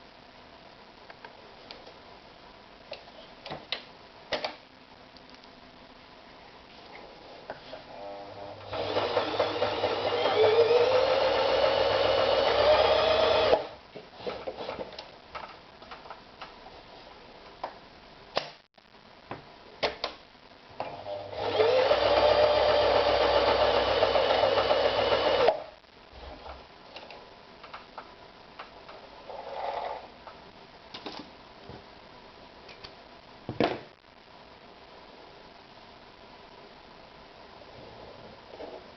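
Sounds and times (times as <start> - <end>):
sewing machine stitching: 20.9 - 25.6.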